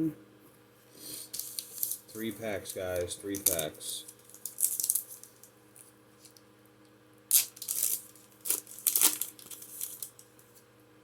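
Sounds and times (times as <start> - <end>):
foil wrapper tearing and crinkling: 1.4 - 5.5, 7.3 - 10.5.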